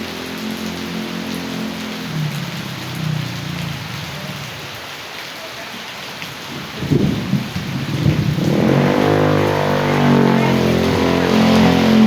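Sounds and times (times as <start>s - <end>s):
vehicle engine approaching: 0.0s - 4.7s, 8.1s - 12.0s
heavy rain hissing: 0.0s - 12.0s
rushing runoff water: 0.0s - 12.0s.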